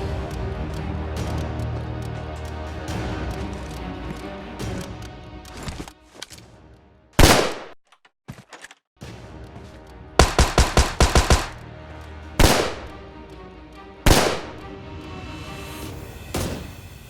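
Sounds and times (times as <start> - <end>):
background music: 0.0 - 7.6, 9.0 - 17.0
gunshots: 7.2 - 7.8, 10.2 - 11.6, 12.4 - 13.0, 14.1 - 14.7.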